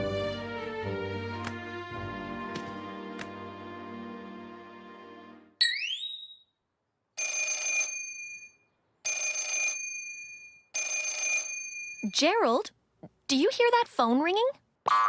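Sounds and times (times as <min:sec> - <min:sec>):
cartoon telephone ringing: 0:07.2 - 0:12.0.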